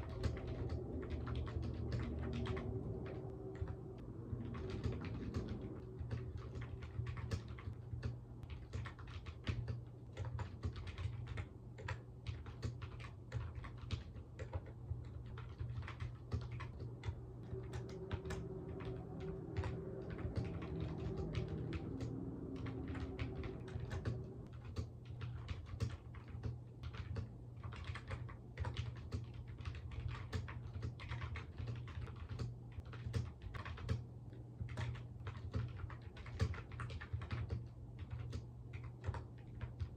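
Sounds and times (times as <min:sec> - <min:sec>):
steady low hum: 0:00.0 - 0:39.9
typing on computer keyboard: 0:00.0 - 0:39.9.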